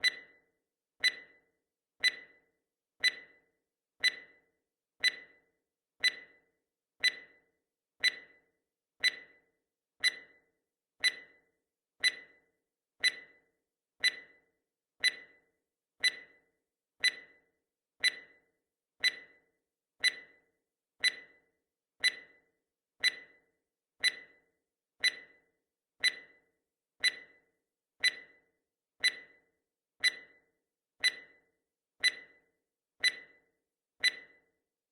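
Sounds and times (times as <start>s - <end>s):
clock ticking: 4.0s - 4.4s, 9.0s - 9.3s.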